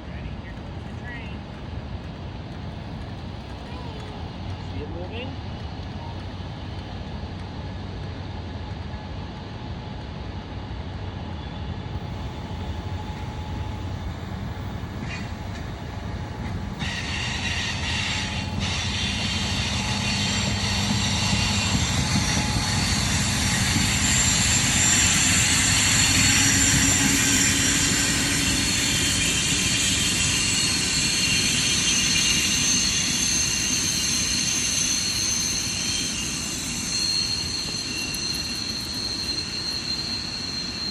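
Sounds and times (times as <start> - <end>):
train rolling by: 0.0 - 40.9
high-pitched wheel squeal: 12.4 - 40.9.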